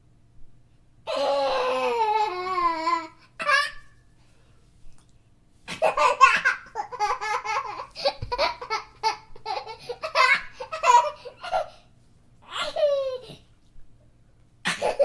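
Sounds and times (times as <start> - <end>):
young child laughing: 5.7 - 11.8, 12.4 - 13.5, 14.7 - 15.0.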